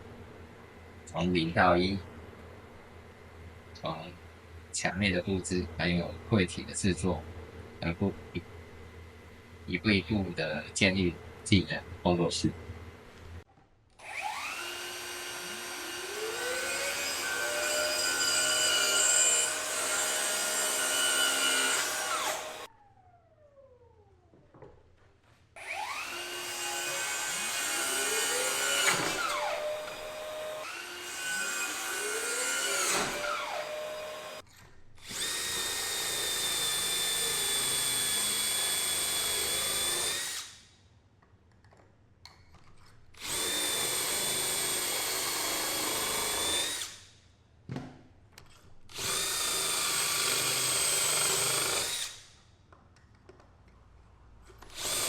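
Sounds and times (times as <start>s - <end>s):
power tool motor running: 14.0s - 22.7s, 25.6s - 34.4s, 35.0s - 40.6s, 43.2s - 47.0s, 48.9s - 52.2s, 54.7s - 55.0s.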